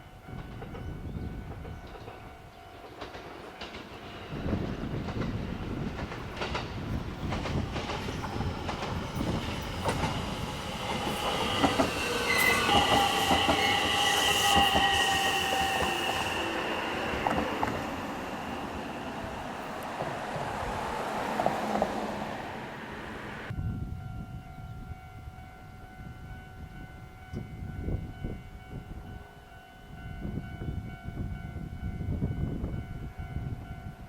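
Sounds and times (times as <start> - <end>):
train rumble: 0.0 - 34.0
wheels clacking over rail joints: 0.3 - 23.5.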